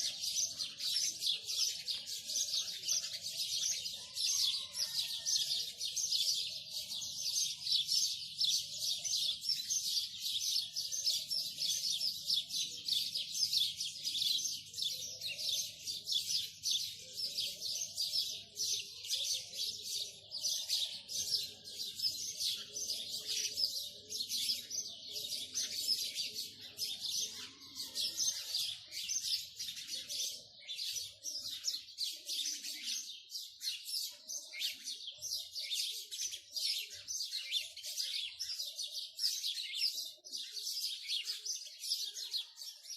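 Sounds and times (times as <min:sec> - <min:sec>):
small birds chirping: 0:00.0 - 0:42.9.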